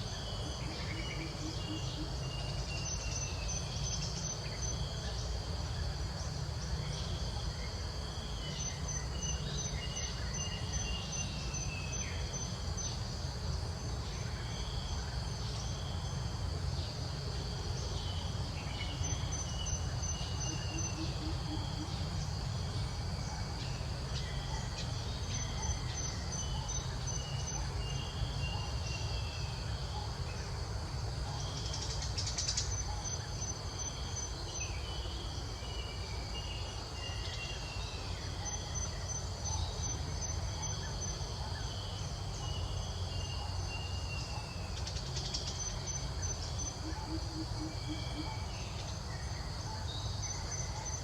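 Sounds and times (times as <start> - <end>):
insects chirping: 0.0 - 51.0.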